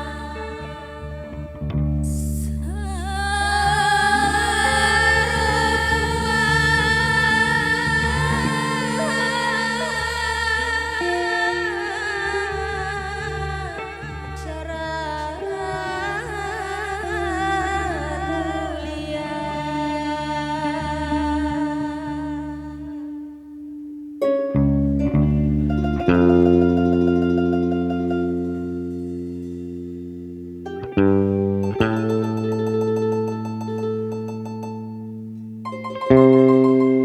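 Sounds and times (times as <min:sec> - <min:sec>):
steady low drone: 0:00.0 - 0:15.5
voices singing slow melody: 0:00.0 - 0:24.2.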